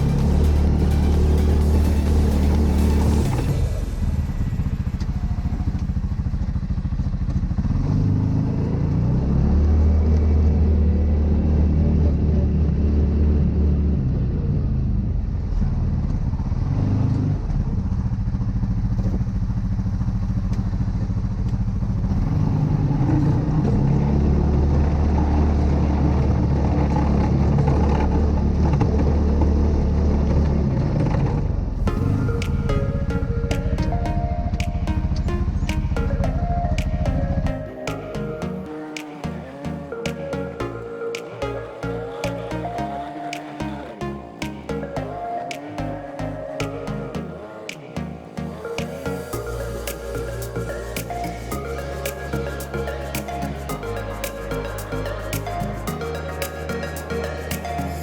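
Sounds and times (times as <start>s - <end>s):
engine revving: 37.5s - 58.0s.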